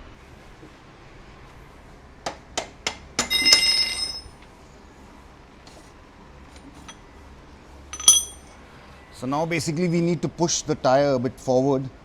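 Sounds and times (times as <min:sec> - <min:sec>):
metal nut and washer clinking: 0:03.2 - 0:04.3, 0:08.0 - 0:08.5.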